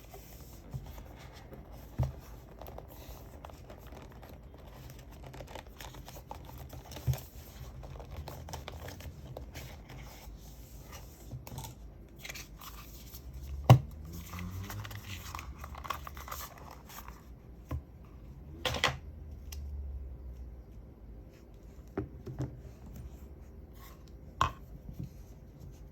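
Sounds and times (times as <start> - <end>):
packaging rustling and tearing: 2.4 - 10.0, 14.0 - 17.2.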